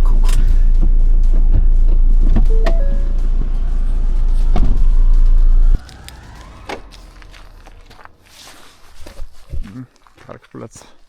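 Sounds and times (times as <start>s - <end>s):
short beeps: 2.5s - 3.4s.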